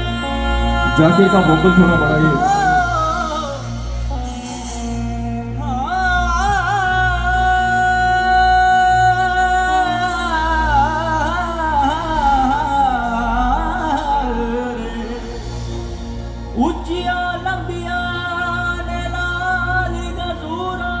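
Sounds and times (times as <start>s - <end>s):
pulsing heavy bass: 0.0s - 21.0s
person singing ornamented notes: 0.2s - 3.8s.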